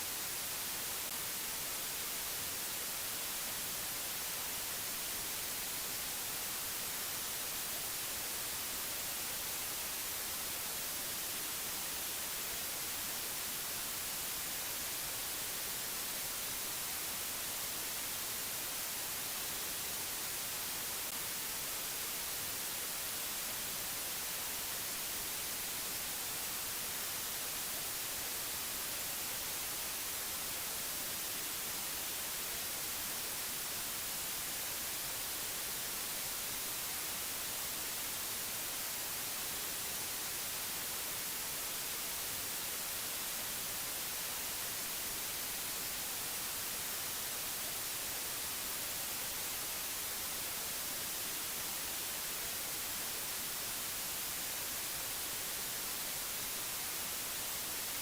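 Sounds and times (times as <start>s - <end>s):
white noise hiss: 0.0s - 58.0s.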